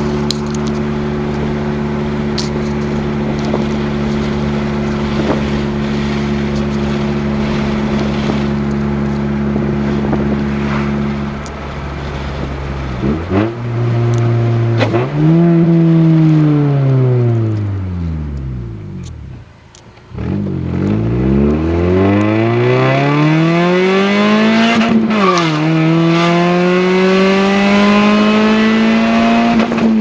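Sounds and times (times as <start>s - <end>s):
four-cylinder engine running: 0.0s - 22.4s.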